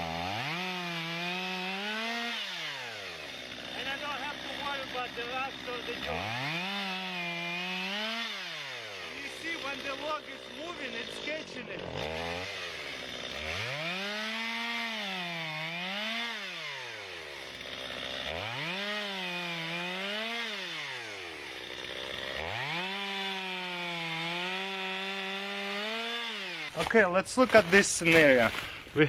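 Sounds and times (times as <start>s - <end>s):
chainsaw cutting a log: 0.0s - 29.0s.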